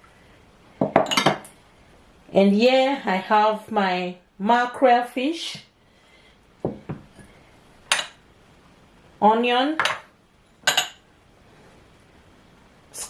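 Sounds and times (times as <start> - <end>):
dishes clinking: 0.8 - 1.5, 7.9 - 8.2, 9.8 - 11.0.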